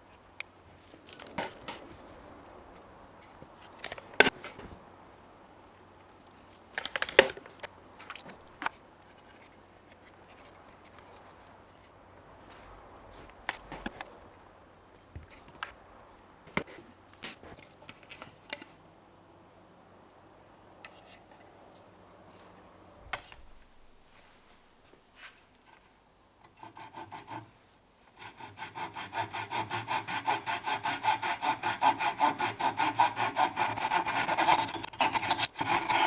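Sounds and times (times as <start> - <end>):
faint rubbing and scraping: 0.0 - 18.5, 20.8 - 26.0.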